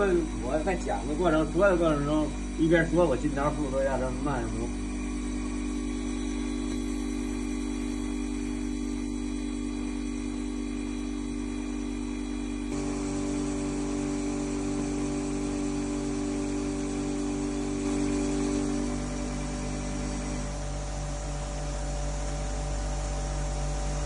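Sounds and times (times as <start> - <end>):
grinding machine motors humming: 0.0 - 24.0
grinding wheel hissing on disc: 0.0 - 24.0.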